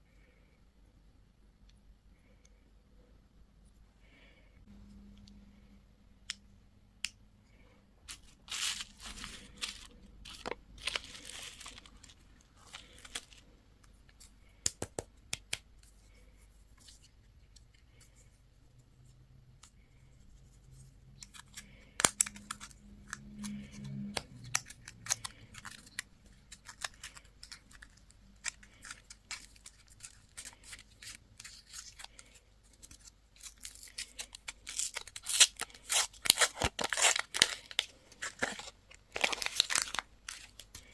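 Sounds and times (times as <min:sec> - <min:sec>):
plastic wrappers crinkling and tearing: 0:08.1 - 0:13.4, 0:21.2 - 0:40.9.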